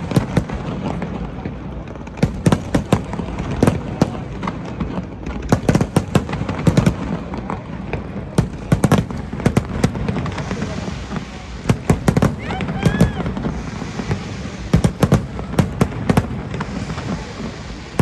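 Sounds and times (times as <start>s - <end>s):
crowd hubbub: 0.0s - 18.0s
fireworks bangs and crackles: 0.0s - 18.0s.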